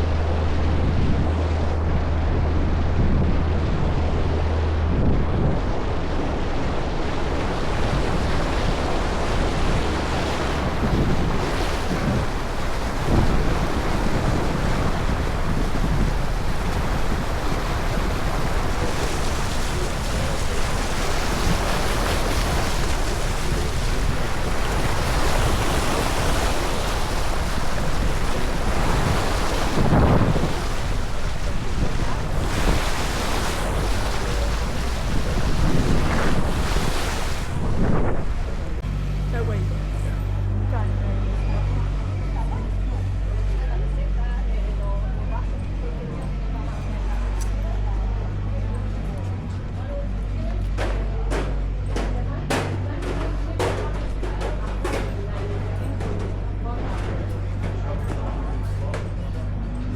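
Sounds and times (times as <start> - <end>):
wind buffeting microphone: 0.0 - 44.2
low engine drone: 0.0 - 59.9
water rushing past hull: 0.0 - 59.9.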